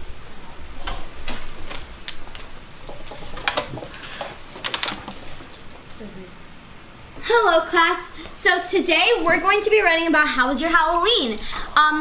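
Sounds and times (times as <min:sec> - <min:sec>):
chairs and desks bumped: 0:02.8 - 0:05.6.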